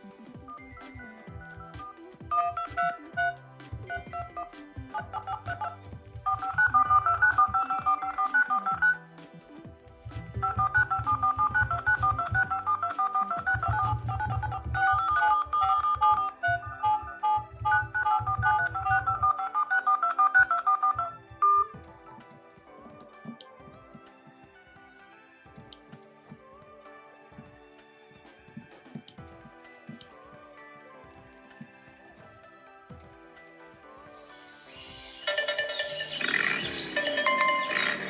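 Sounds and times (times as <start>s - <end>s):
fast electronic beeping melody: 0.1s - 9.2s, 10.0s - 21.8s, 34.7s - 38.0s
pulsing low beat: 9.7s - 15.3s.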